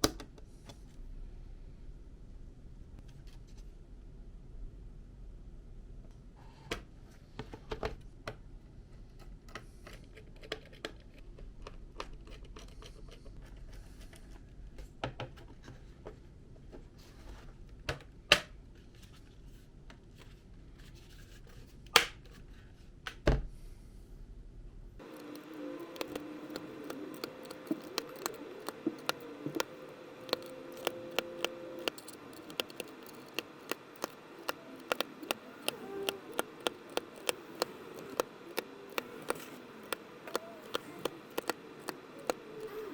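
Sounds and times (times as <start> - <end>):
hard plastic parts clicking: 25.0 - 42.9
plastic snaps: 25.1 - 42.9.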